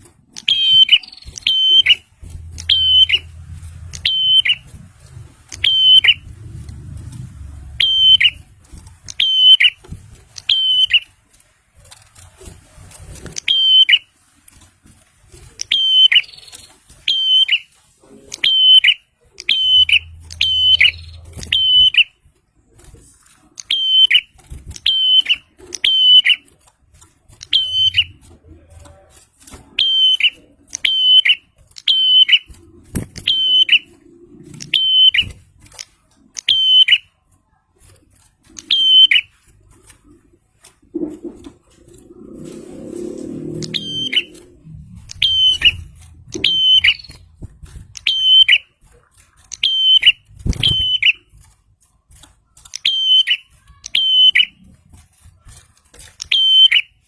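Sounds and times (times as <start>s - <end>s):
bird calling sharp high notes: 0.4s - 4.8s, 5.5s - 6.3s, 7.7s - 8.5s, 9.2s - 9.8s, 10.4s - 11.1s, 18.4s - 22.1s, 33.2s - 35.4s, 42.8s - 47.3s, 48.0s - 48.7s, 49.5s - 51.3s, 52.8s - 54.6s.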